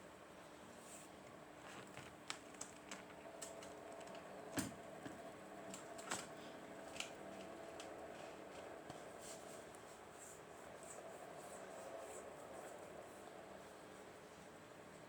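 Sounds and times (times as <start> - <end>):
light clicks and taps: 1.7 - 9.1.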